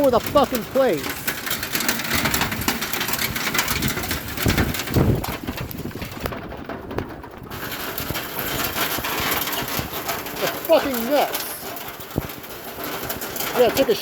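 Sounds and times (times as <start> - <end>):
low thuds: 0.0 - 10.1
hailstones clattering: 0.0 - 14.0.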